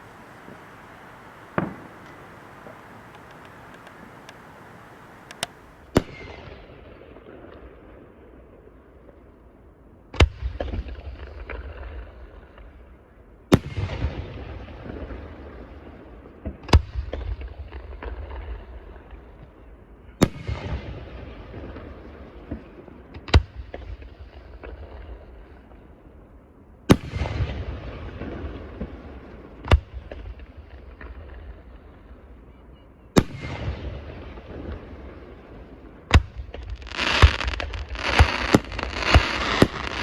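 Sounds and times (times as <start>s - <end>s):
low rumbling echo: 0.0s - 5.8s
firework shells bursting: 0.0s - 6.0s, 36.8s - 40.0s
firework crackles: 0.0s - 6.1s, 34.6s - 40.0s.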